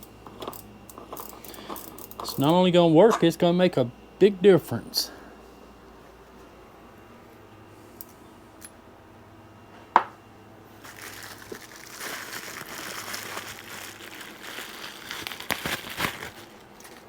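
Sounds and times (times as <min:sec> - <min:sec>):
packaging crinkling and rustling: 0:10.8 - 0:17.0.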